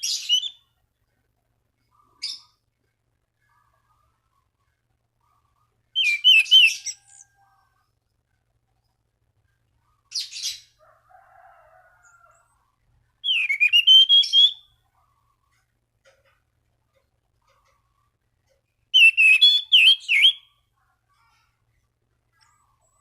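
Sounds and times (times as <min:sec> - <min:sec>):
thrush whistled song: 0:06.0 - 0:07.2, 0:13.2 - 0:14.8, 0:18.9 - 0:20.6.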